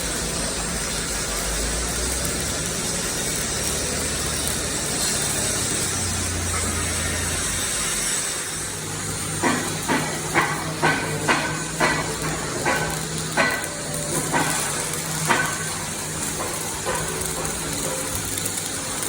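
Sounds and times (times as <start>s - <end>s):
metal-on-metal ringing strikes: 9.4s - 18.2s.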